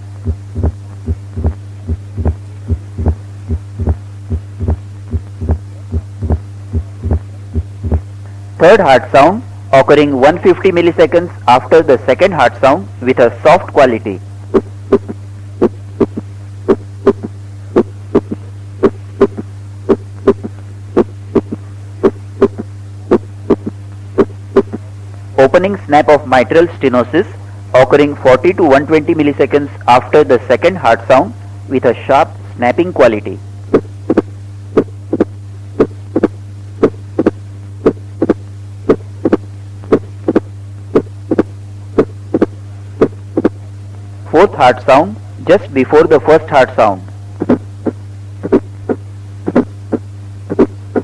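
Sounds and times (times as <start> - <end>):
steady low hum: 0.0 - 51.0
heart sounds: 0.2 - 8.1, 14.5 - 24.8, 33.7 - 43.6, 47.4 - 51.0.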